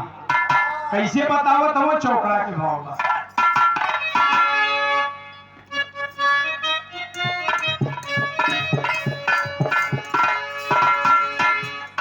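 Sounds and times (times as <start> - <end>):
dholak drum strokes: 0.0 - 1.8, 2.9 - 12.0
harmonium melody: 3.0 - 12.0.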